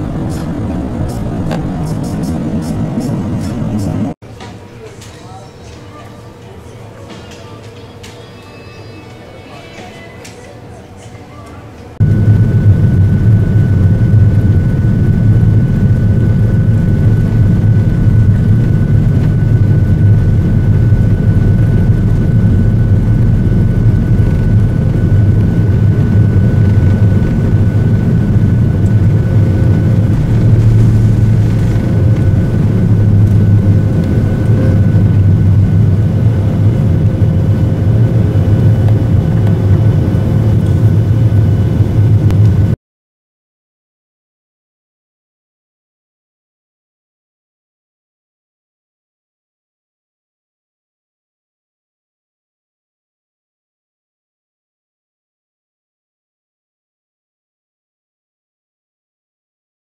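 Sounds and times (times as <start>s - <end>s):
vehicle rumble at highway speed: 0.0s - 4.2s, 12.0s - 42.6s.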